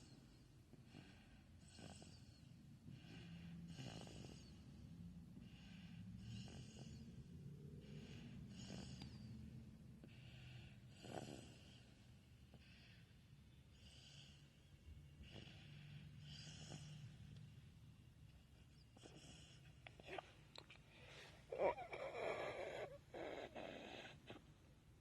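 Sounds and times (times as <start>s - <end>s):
faint quick snoring: 10.5s - 11.8s.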